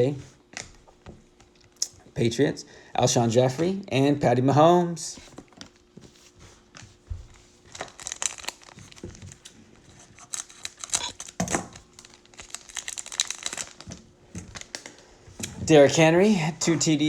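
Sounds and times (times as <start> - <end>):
plastic wrapper crinkling: 5.2 - 16.0.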